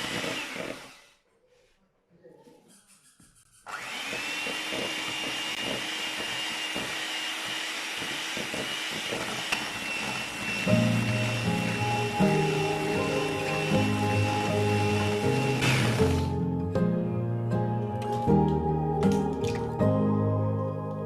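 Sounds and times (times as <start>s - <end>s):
appliance motor whining: 0.0s - 1.2s, 3.7s - 16.5s.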